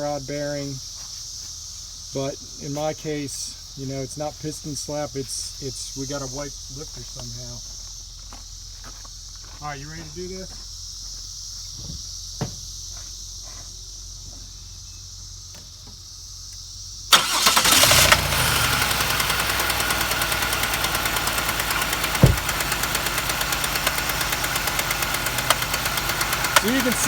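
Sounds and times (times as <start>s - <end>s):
engine cranking and idling: 17.1s - 27.0s
fast even ticking: 20.0s - 27.0s.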